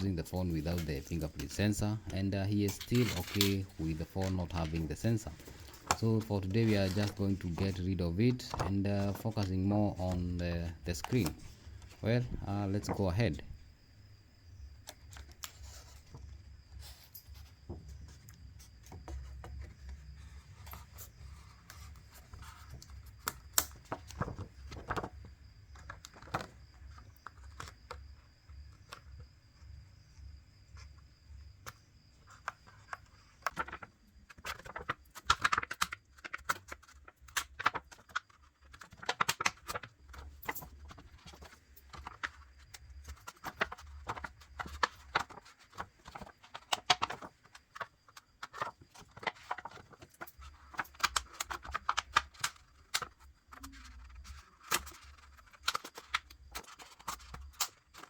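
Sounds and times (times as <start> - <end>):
metal tools clicking and scraping: 2.6 - 3.8.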